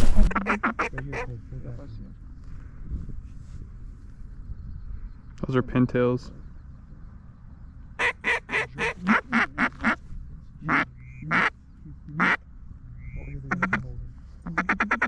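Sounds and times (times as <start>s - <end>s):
duck quacking: 0.0s - 1.3s, 8.0s - 10.0s, 10.6s - 11.5s, 12.1s - 12.4s, 13.0s - 15.0s.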